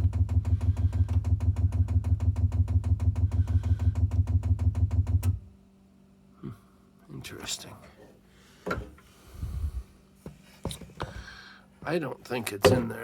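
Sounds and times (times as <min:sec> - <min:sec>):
fuel pump ticking rapidly: 0:00.0 - 0:05.3.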